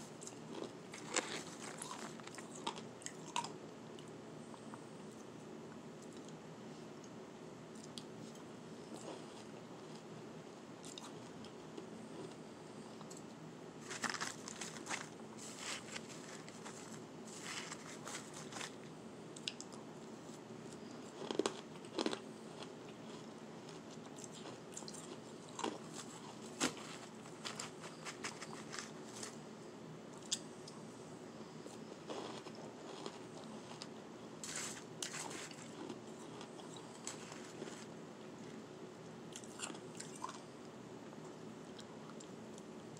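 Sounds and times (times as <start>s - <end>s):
crunching and chewing ice: 0.1s - 4.1s, 13.8s - 19.8s, 20.7s - 29.5s, 31.7s - 38.6s, 39.3s - 40.5s.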